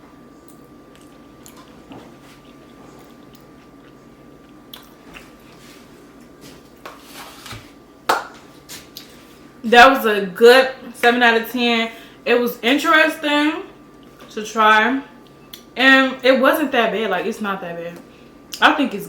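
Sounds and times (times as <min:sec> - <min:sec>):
person chewing food: 0:00.9 - 0:05.6.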